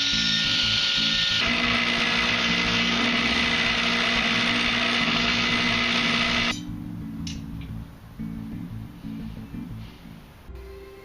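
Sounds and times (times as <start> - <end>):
power grinder grinding steel: 0.0 - 6.6.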